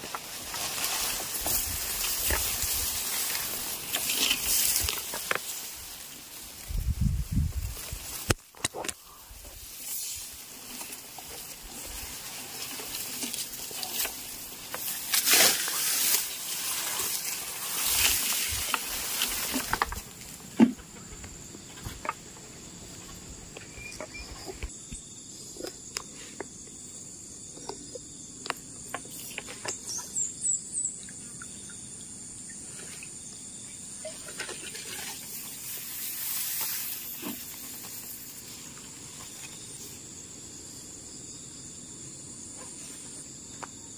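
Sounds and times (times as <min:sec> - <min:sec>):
insects chirring: 0:00.0 - 0:43.9
rustling and handling noise: 0:07.5 - 0:23.3.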